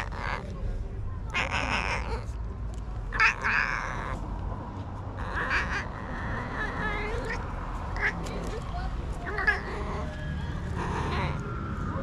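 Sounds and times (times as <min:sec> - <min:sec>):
cat meowing: 0:00.0 - 0:00.4, 0:01.3 - 0:02.4, 0:03.1 - 0:04.2, 0:05.2 - 0:07.4, 0:08.0 - 0:08.3, 0:09.2 - 0:11.5.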